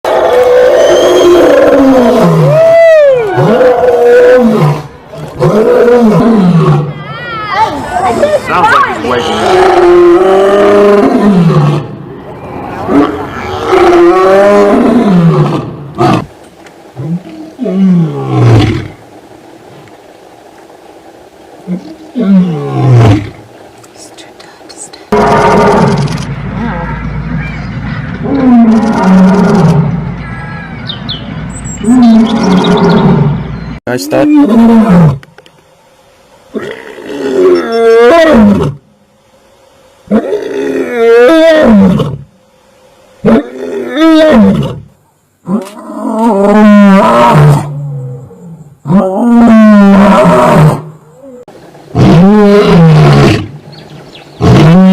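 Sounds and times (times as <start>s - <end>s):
lion roaring: 0.1s - 6.9s, 9.1s - 12.0s, 12.8s - 16.3s, 17.0s - 19.0s, 21.6s - 23.4s, 25.1s - 27.0s, 28.2s - 30.0s, 34.2s - 35.2s, 36.5s - 38.8s, 40.0s - 42.3s, 43.2s - 53.6s, 54.4s - 54.9s.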